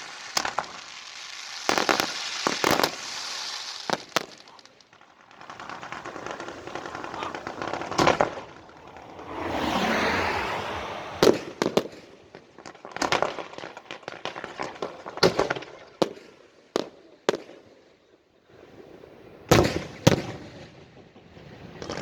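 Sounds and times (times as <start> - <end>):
firework hissing: 0.0 - 12.1
firework crackling: 0.0 - 16.3
firework bangs: 0.0 - 17.5.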